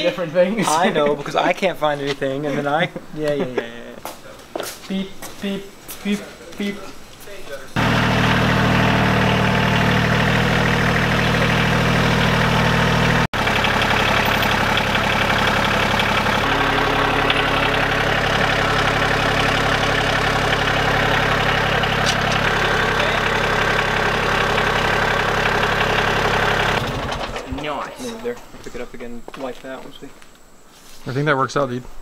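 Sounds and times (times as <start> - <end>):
tractor engine idling: 7.8 - 27.8.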